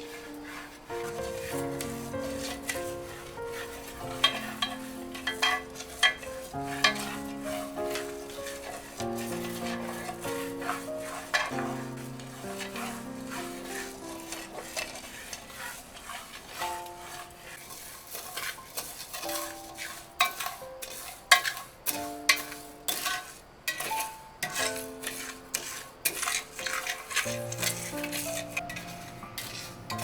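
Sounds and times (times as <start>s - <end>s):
soft background music: 0.0s - 30.0s
utensil stirring and scraping cookware: 0.0s - 30.0s.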